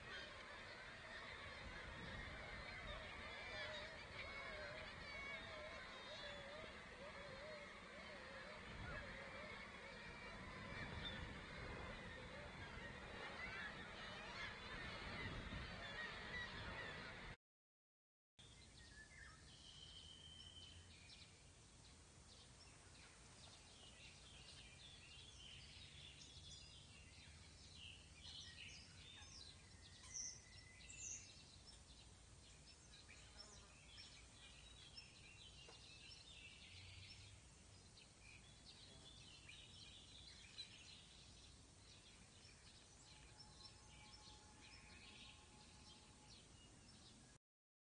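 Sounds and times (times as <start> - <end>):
low background hiss: 18.4 - 47.4
bird chirps: 23.5 - 47.2.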